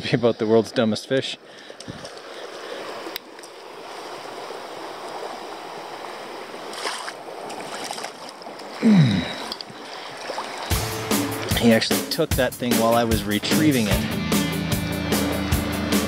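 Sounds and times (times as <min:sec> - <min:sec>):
stream rushing over rocks: 0:01.5 - 0:10.8.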